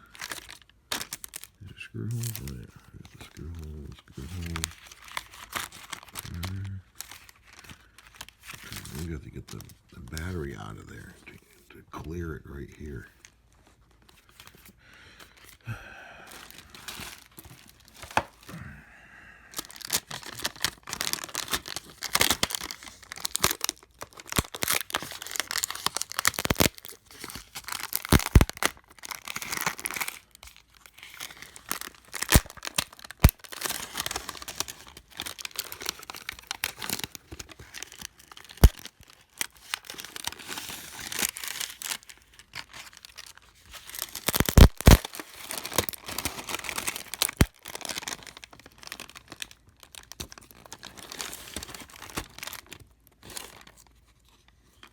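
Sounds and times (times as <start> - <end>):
adhesive tearing and crackling: 0.0 - 11.2, 19.6 - 53.8
sharp snaps: 38.6 - 38.8.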